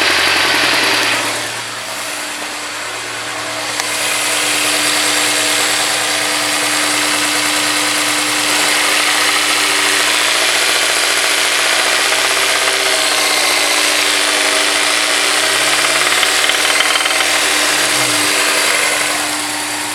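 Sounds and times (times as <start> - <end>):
engine knocking: 0.0 - 1.6, 5.4 - 19.9
car engine running: 7.6 - 19.9.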